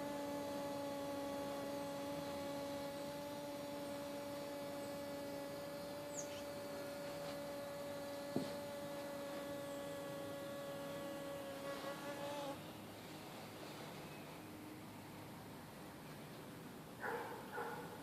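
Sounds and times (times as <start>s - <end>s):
hoverfly buzzing: 0.0s - 12.7s.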